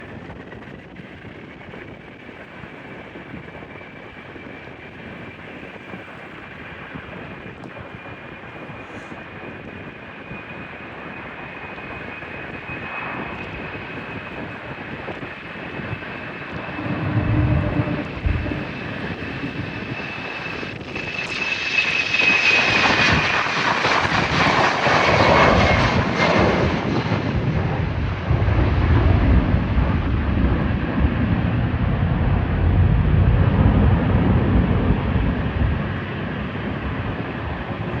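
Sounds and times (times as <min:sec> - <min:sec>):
airliner engines whine: 0:00.0 - 0:38.0
deep engine rumble: 0:15.5 - 0:19.7.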